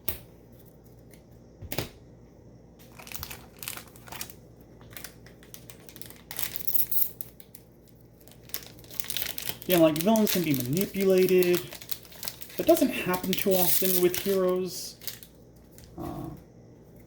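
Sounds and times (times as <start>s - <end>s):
foil wrapper crinkling and tearing: 2.8s - 16.0s.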